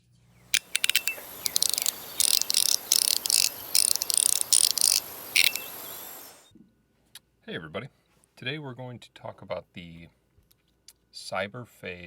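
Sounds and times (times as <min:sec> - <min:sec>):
fidget slider clicking: 0:00.5 - 0:06.4.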